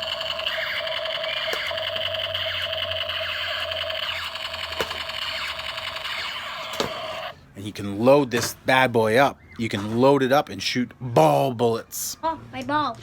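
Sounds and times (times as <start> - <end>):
electronic machine-gun toy rattle: 0.0 - 7.4.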